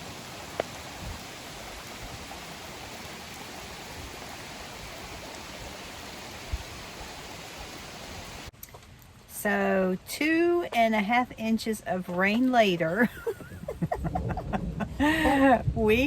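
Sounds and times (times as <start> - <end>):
steady rain falling: 0.0 - 8.5, 12.9 - 16.0.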